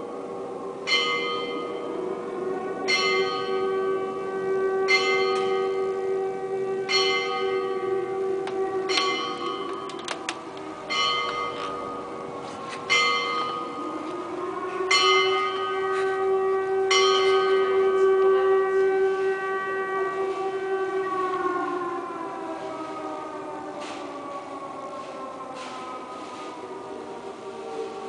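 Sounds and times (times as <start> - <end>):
air raid siren wailing: 0.0 - 28.0
church bell striking: 0.8 - 2.2, 2.8 - 14.0, 14.6 - 19.5.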